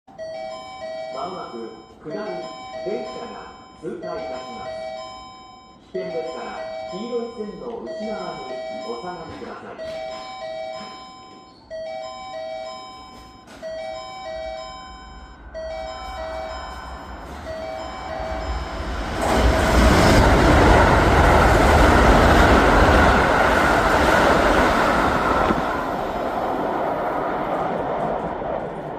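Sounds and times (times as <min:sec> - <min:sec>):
electronic warning chime melody: 0:00.1 - 0:20.3
train passing through station: 0:00.1 - 0:28.9.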